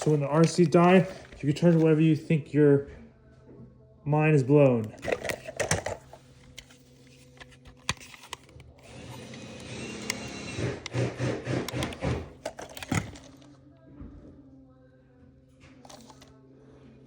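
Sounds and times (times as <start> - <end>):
toy car electric motor whirring: 7.2 - 13.4
sharp plastic clicks: 10.1 - 13.4.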